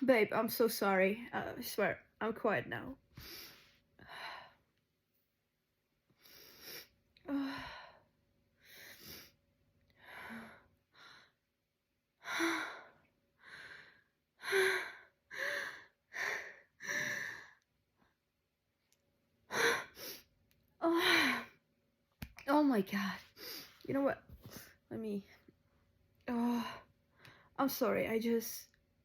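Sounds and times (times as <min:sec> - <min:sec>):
woman gasping breaths: 0:12.2 - 0:17.6.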